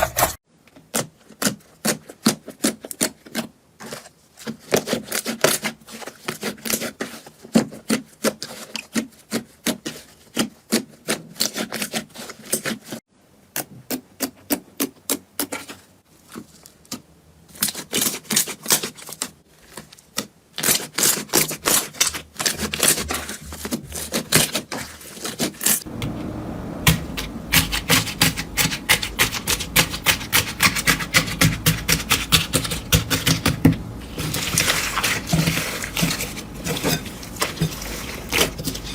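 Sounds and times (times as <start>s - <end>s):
low rumble: 25.9s - 27.8s.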